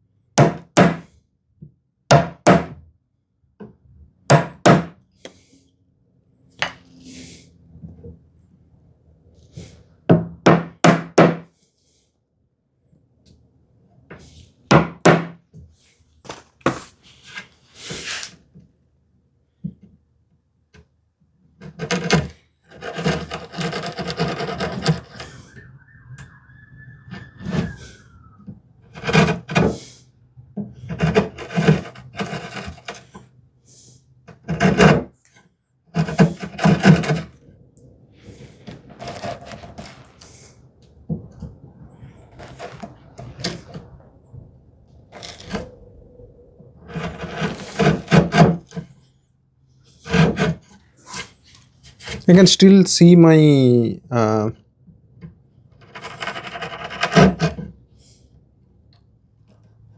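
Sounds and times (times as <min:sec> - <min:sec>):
chisel paring wood: 0:00.4 - 0:01.0, 0:04.3 - 0:04.9, 0:21.6 - 0:25.4, 0:29.0 - 0:29.8, 0:30.9 - 0:33.2, 0:34.3 - 0:35.1, 0:36.0 - 0:37.3, 0:39.0 - 0:39.9, 0:46.9 - 0:48.8, 0:50.0 - 0:50.7, 0:55.8 - 0:57.6
short high squeak: 0:24.2 - 0:29.0.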